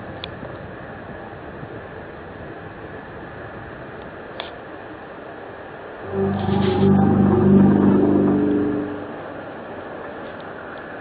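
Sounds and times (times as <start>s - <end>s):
steady background hiss: 0.0s - 11.0s.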